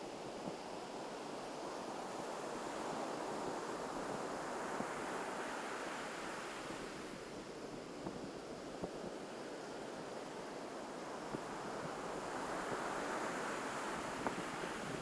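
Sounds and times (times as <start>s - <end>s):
wind on microphone: 10.8s - 15.0s.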